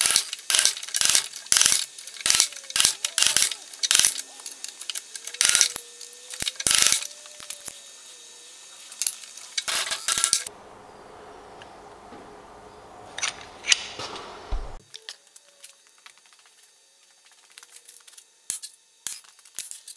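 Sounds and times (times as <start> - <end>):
metal parts clinking: 0.0 - 10.5, 14.9 - 19.9
steady low hum: 0.0 - 14.8.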